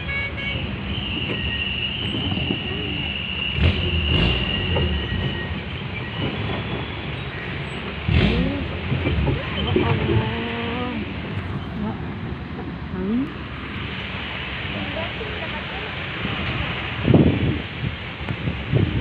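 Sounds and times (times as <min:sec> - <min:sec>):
vehicle rattling on rough track: 0:00.0 - 0:19.0
high squeal: 0:00.9 - 0:07.9.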